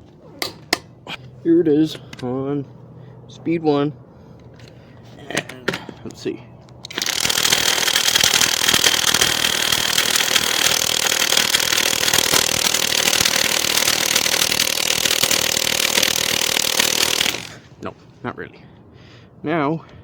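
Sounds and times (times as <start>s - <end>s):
impact wrench hammering: 6.9s - 17.6s.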